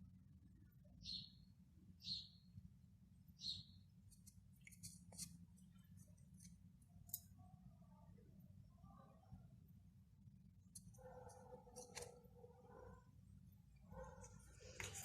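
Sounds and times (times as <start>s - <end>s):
high bird chirps: 1.0s - 1.4s, 2.0s - 2.4s, 3.4s - 3.8s.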